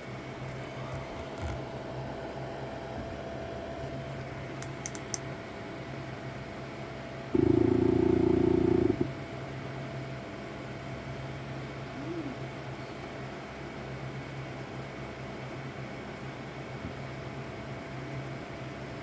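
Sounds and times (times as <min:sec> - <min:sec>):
printer humming: 0:00.0 - 0:04.8
light clicks: 0:04.6 - 0:05.3.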